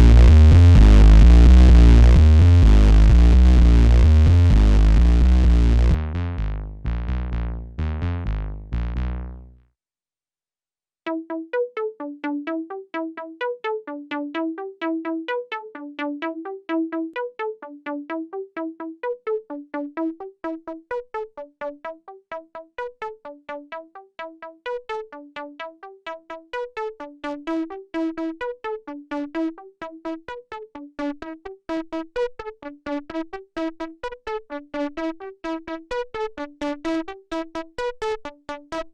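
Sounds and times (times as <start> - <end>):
distorted bass synth notes: 0.0 - 9.6
synth plucked notes pattern: 0.0 - 9.6, 11.1 - 38.9.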